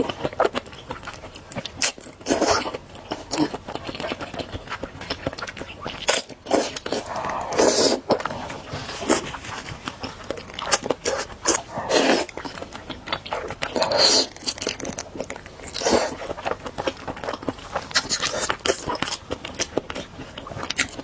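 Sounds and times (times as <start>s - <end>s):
chewing and mouth clicks: 0.0s - 21.0s
slurping noodles: 6.1s - 9.4s, 10.6s - 12.6s, 13.3s - 15.0s, 15.6s - 16.4s.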